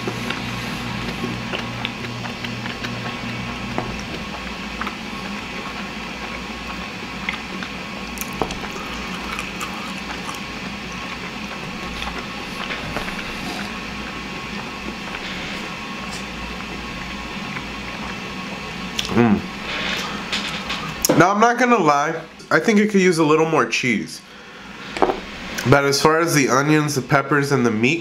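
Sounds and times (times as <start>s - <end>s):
wet chewing mouth sounds: 0.0s - 18.2s, 18.9s - 20.1s.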